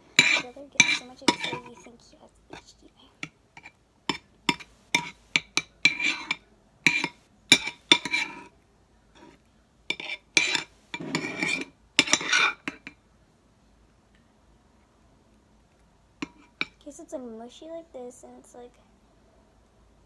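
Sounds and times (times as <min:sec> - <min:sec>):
spoon clinking and scraping bowl: 0:00.1 - 0:08.5, 0:09.2 - 0:13.0, 0:16.2 - 0:16.8.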